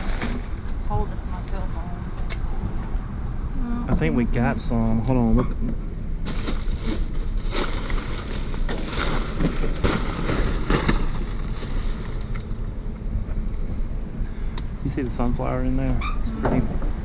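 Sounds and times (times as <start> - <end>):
trash rustling and knocking: 0.0 - 0.8, 6.2 - 12.7
steady low rumble: 0.0 - 17.0.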